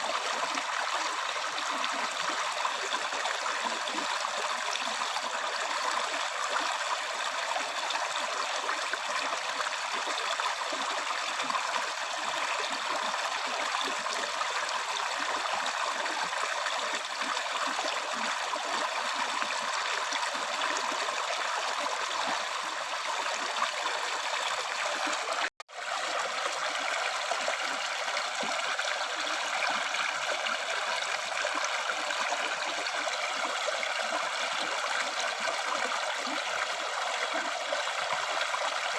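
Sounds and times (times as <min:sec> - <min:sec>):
river stream flowing: 0:00.0 - 0:38.9.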